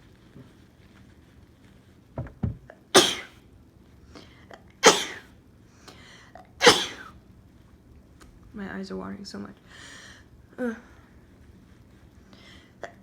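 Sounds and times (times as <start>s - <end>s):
woman sneezing: 3.0s - 3.3s, 4.8s - 5.2s, 6.6s - 7.1s.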